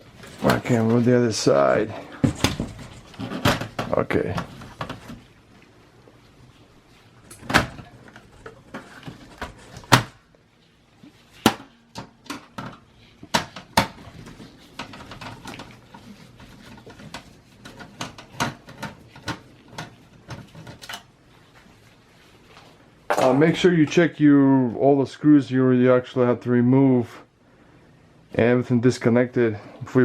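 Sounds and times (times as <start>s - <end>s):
clicks and knocks in computer case: 2.2s - 5.2s, 7.3s - 10.2s, 11.4s - 15.7s.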